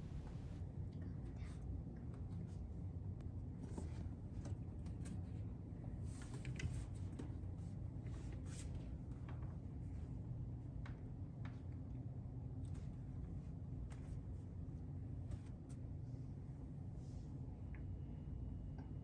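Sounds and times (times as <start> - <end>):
low hum: 0.0 - 0.6
small clicks and rustles: 6.1 - 7.4.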